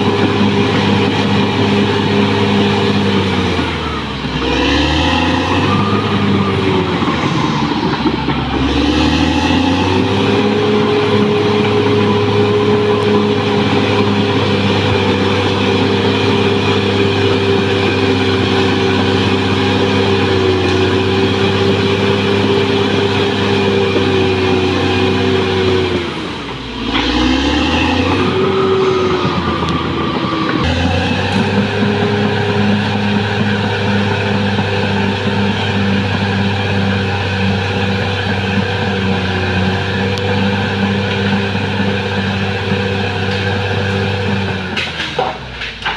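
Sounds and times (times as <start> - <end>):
bulldozer diesel engine running: 0.0 - 45.9.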